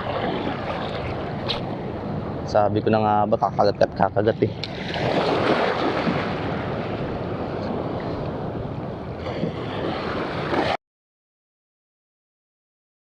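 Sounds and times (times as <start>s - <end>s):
surf washing on shore: 0.0s - 3.5s, 4.3s - 10.8s
wind buffeting microphone: 0.0s - 10.8s.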